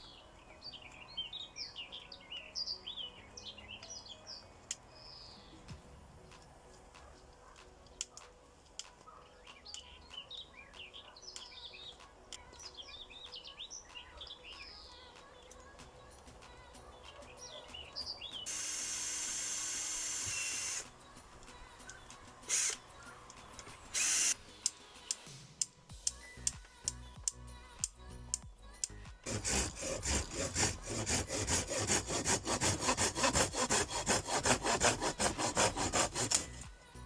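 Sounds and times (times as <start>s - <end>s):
small birds chirping: 9.0s - 15.7s, 16.8s - 24.4s
power drill running: 18.5s - 20.9s, 22.4s - 22.8s, 23.9s - 24.4s, 29.3s - 36.6s.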